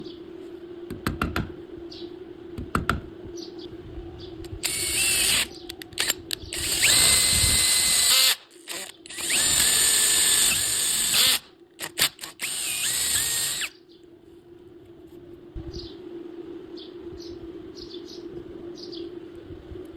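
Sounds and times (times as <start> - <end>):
electric drill whining: 4.6 - 13.7.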